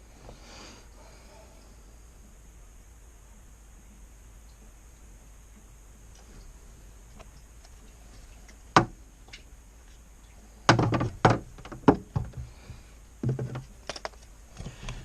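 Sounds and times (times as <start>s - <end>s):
tools and parts knocking and clanking: 10.7s - 12.5s, 13.2s - 14.2s.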